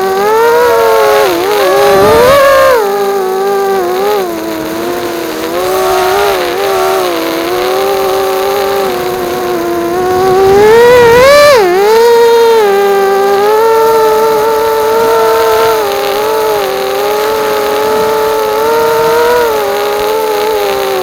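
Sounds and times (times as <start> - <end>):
drone motors whining: 0.0 - 21.0.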